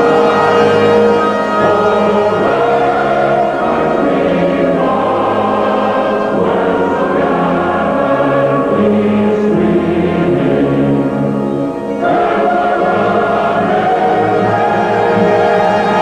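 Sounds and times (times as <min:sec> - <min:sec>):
instrumental accompaniment: 0:00.0 - 0:03.3
choir singing anthem: 0:00.0 - 0:16.0.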